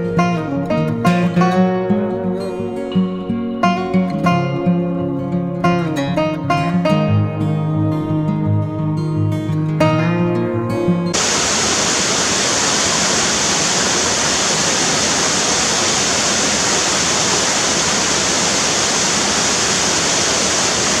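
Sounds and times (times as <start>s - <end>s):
music: 0.0s - 11.2s
running water rushing: 11.2s - 21.0s.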